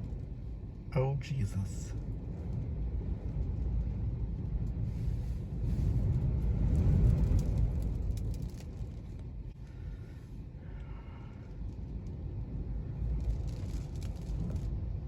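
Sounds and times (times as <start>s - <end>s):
road and wind noise inside car: 0.0s - 15.0s.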